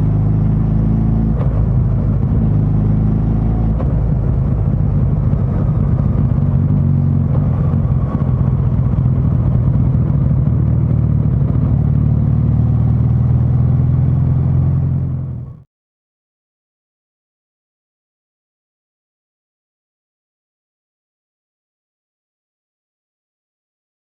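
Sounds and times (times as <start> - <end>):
motorcycle engine cruising: 0.0 - 15.6.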